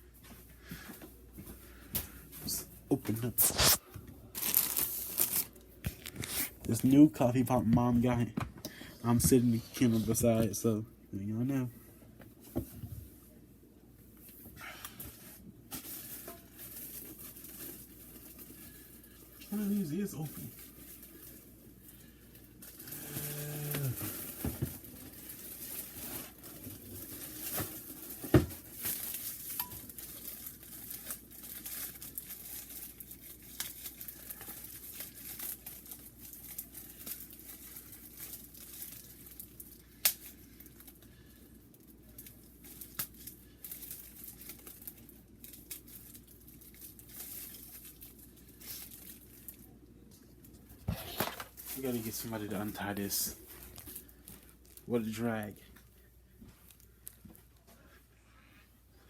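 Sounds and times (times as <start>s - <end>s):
packaging crinkling and tearing: 3.0s - 6.9s, 15.7s - 49.7s.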